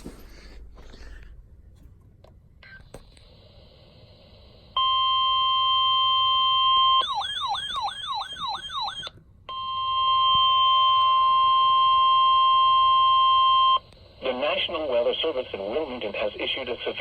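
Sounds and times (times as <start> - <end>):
emergency alert warbling tone: 6.0 - 9.1.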